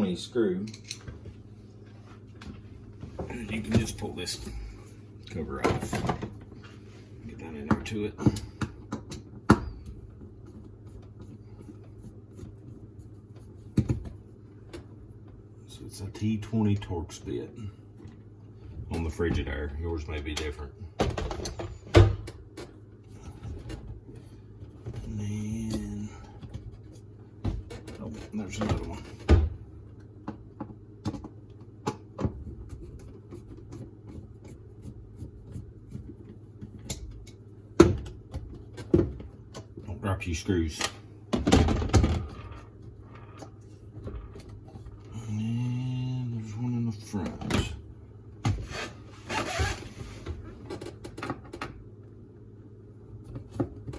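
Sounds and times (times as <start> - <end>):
steady low hum: 0.0 - 53.9.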